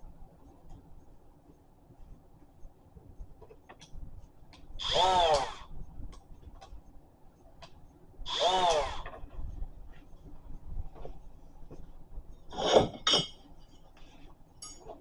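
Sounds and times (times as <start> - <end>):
die grinder spinning up: 8.3 - 9.0.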